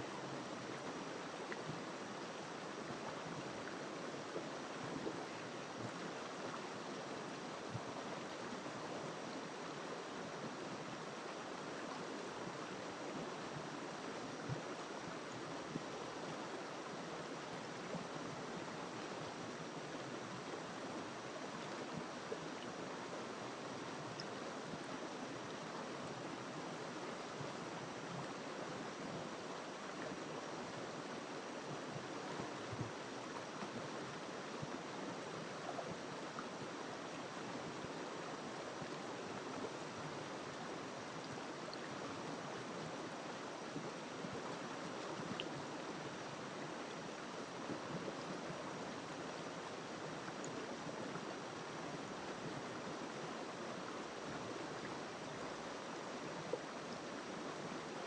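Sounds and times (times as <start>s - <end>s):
river water rushing: 0.0s - 58.0s.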